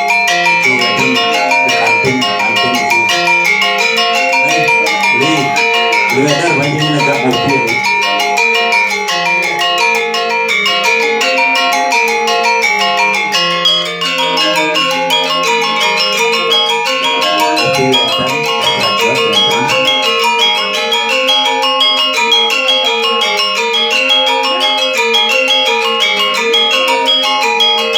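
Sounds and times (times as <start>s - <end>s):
gamelan metallophones ringing: 0.0s - 27.9s.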